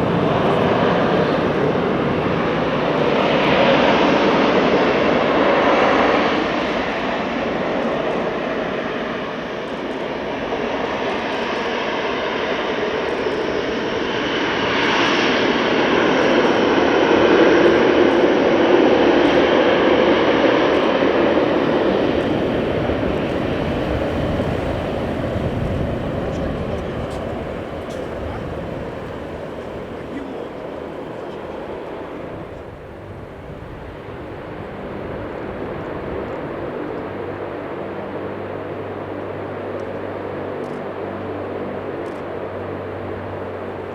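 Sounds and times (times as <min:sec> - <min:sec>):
propeller aircraft engine drone: 0:00.0 - 0:43.9.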